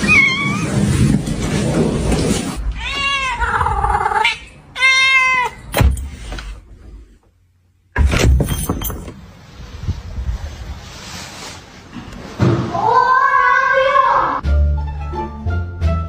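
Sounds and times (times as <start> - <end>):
cat meowing: 0.0 - 0.9, 2.7 - 5.7.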